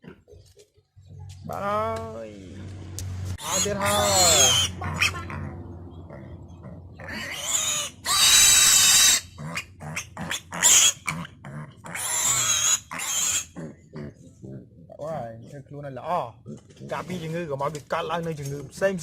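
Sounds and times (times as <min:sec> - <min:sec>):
piglets squealing: 0:03.4 - 0:14.7
piglets grunting: 0:03.4 - 0:15.6.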